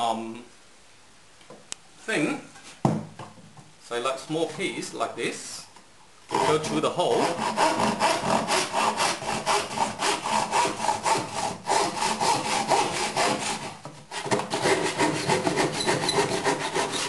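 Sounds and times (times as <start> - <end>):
hand saw cutting wood: 6.3 - 17.0.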